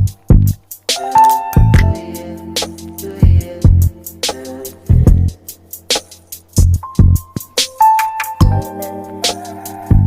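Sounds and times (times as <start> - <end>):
hip-hop drum-machine beat: 0.0 - 10.0
held synth notes: 1.0 - 7.4.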